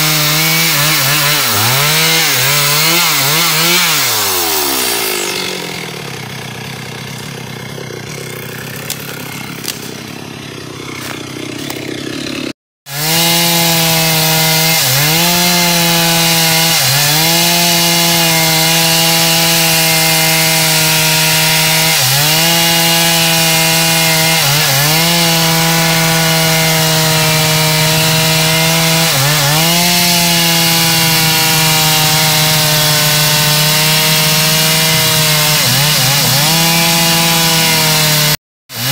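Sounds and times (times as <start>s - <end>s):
chainsaw cutting wood: 0.0s - 38.9s.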